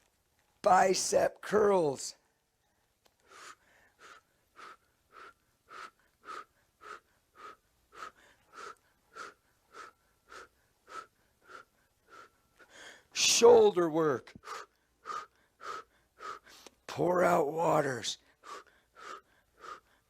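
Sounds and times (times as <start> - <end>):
short whistling breaths: 3.2 - 13.1, 14.3 - 16.9, 18.3 - 20.0.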